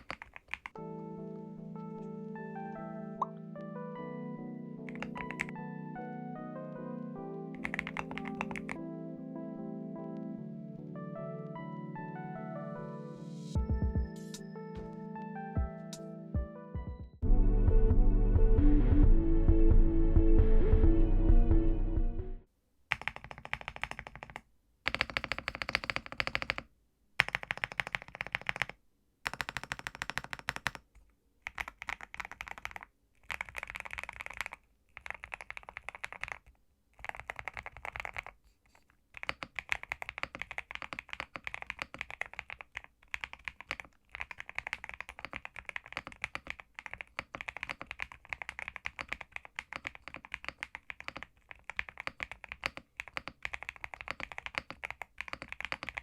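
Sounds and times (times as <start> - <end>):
mechanical keyboard typing: 0.0 - 0.8, 4.8 - 5.6, 7.5 - 8.8, 22.9 - 38.4, 39.1 - 56.0.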